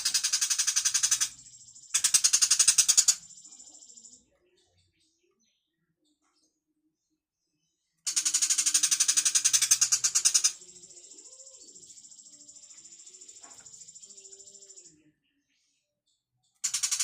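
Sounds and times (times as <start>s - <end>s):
bird buzzing trill: 0.0s - 3.2s, 8.1s - 14.7s
bird rattling chatter: 0.0s - 3.5s, 8.1s - 11.1s, 16.6s - 17.0s.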